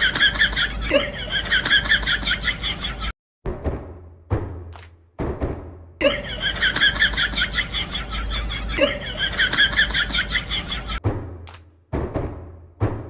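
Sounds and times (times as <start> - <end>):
harsh repeated laughter: 0.0 - 3.1, 6.0 - 11.0
sudden thumps: 3.4 - 6.0, 11.0 - 13.0.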